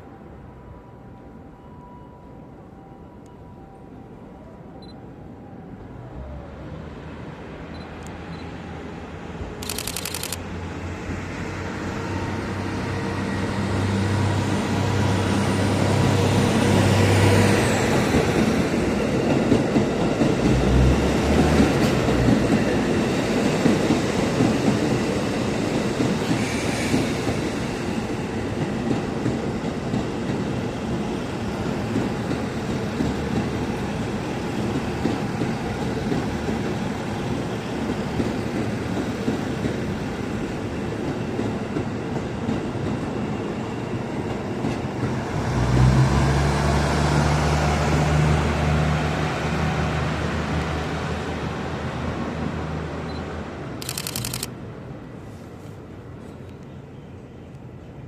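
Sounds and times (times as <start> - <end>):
train wheels clickety-clack: 17.8 - 45.9.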